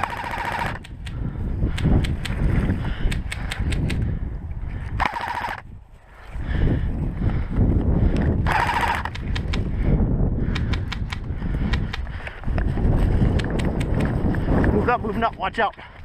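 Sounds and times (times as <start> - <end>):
airsoft gun automatic bursts: 0.0 - 0.9, 5.0 - 5.6, 8.4 - 9.4.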